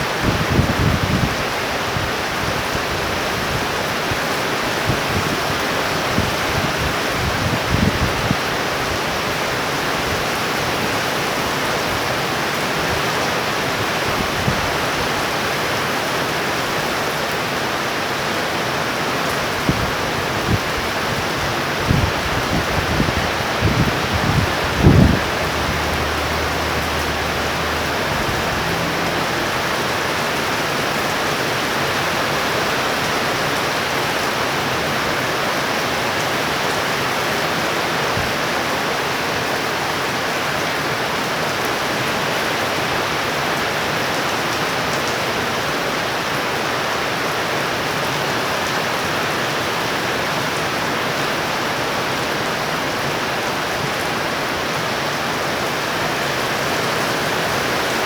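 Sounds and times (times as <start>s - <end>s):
heavy rain falling: 0.0s - 58.0s
low thunder rumble: 21.8s - 30.9s.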